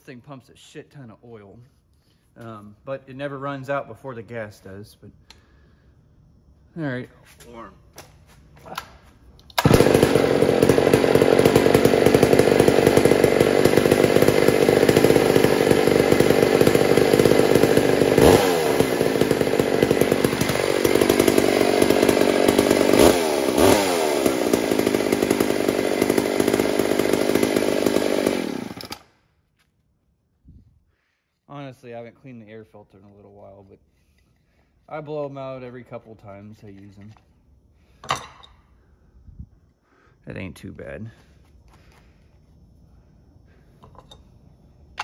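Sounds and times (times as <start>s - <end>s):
chainsaw engine running: 9.6s - 29.1s.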